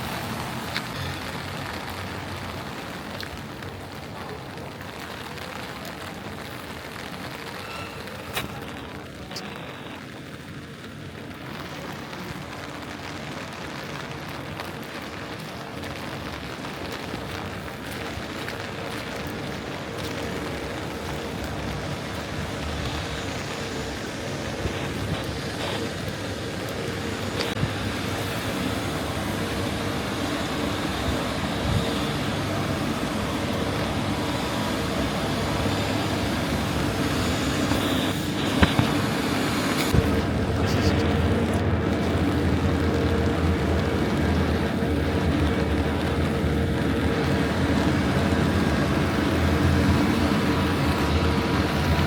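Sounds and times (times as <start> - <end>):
rain falling on a street: 0.0 - 52.0
vehicle engine humming: 17.3 - 52.0.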